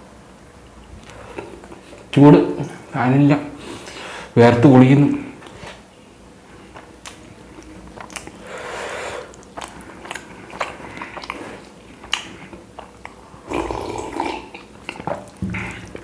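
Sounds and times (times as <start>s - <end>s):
man chewing bread: 6.4s - 16.0s.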